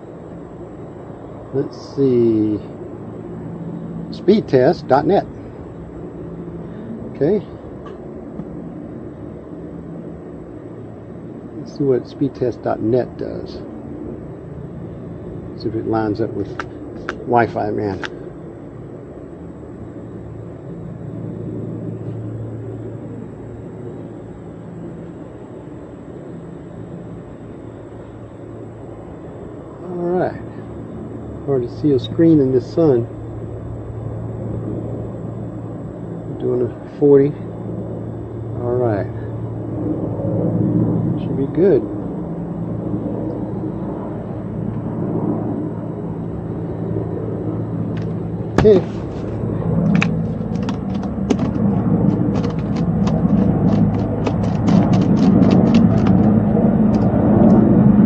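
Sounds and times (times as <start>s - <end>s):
low engine hum: 0.0s - 58.0s.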